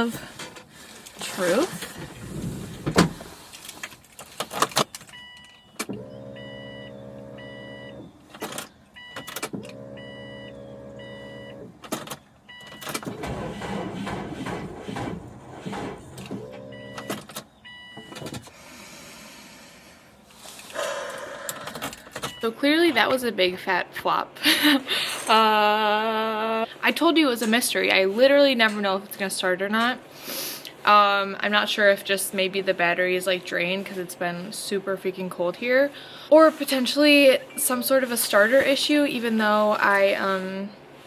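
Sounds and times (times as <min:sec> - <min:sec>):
starter motor whirring: 0:05.1 - 0:18.5
warning chime beeping: 0:05.2 - 0:08.2, 0:09.0 - 0:11.7, 0:16.5 - 0:18.1, 0:37.3 - 0:38.2.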